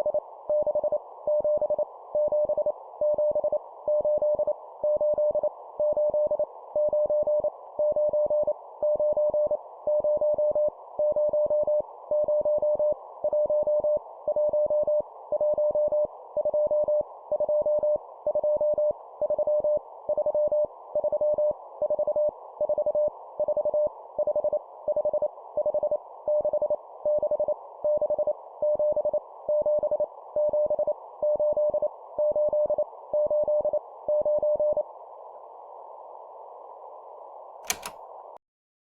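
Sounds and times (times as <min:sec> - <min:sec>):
morse code beeps: 0:37.7 - 0:37.9.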